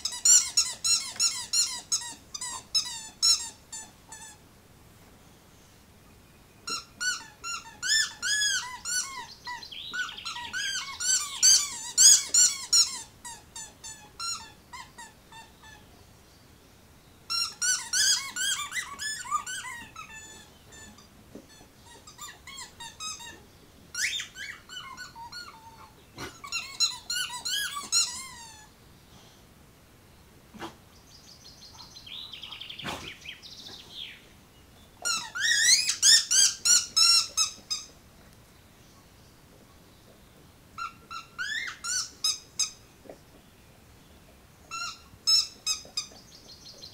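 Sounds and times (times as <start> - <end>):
rubber squeaky toy squeaking: 0.0 - 4.4, 6.7 - 15.8, 17.3 - 28.7, 35.0 - 38.0, 40.8 - 43.2, 44.7 - 46.2.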